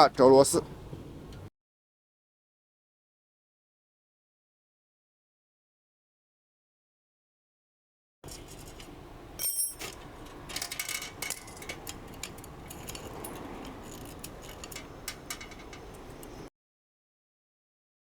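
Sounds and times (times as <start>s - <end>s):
metal tools clicking: 8.3s - 16.5s
ringing metal clink: 9.4s - 16.4s.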